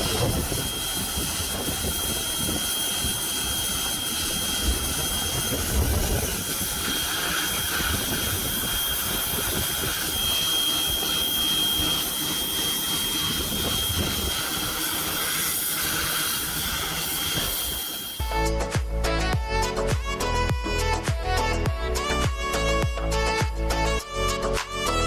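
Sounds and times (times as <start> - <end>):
music: 18.2 - 25.0.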